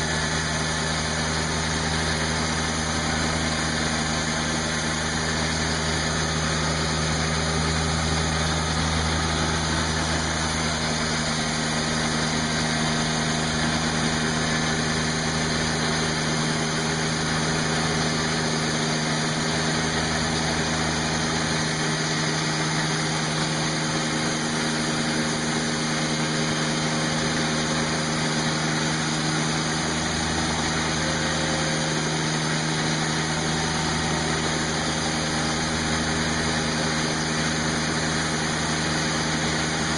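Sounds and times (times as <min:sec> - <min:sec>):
diesel engine droning: 0:00.0 - 0:39.9
saw blade cutting log: 0:00.0 - 0:39.9.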